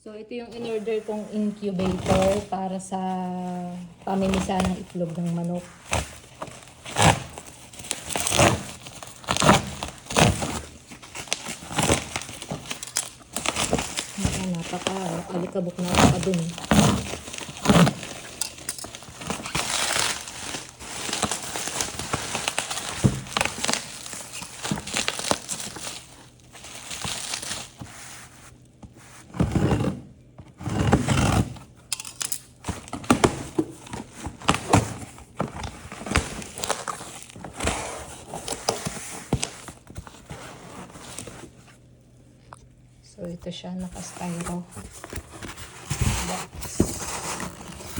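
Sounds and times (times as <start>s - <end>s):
crinkling of wrapping: 0.6s - 29.8s, 30.5s - 47.9s
packaging tearing: 4.1s - 28.3s, 30.8s - 41.6s.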